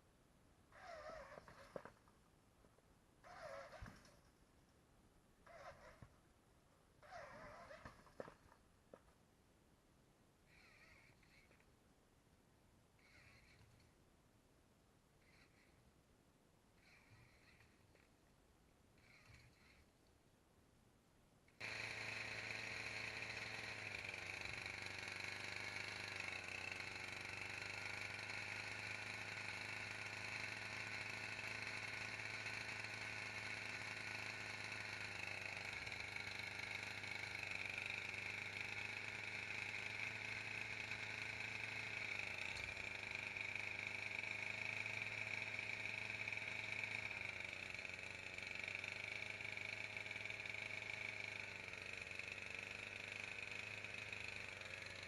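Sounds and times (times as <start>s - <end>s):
robot motor whining: 0.7s - 2.0s, 3.2s - 4.2s, 5.4s - 6.1s, 7.0s - 8.4s, 10.5s - 11.6s, 13.0s - 13.9s, 15.2s - 15.8s, 16.8s - 18.1s, 19.0s - 19.9s.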